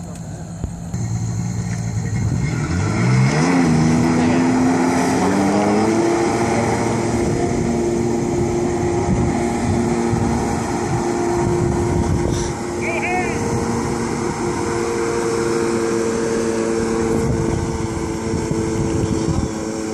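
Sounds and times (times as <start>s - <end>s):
jet boat engine speeding up: 0.0s - 19.9s.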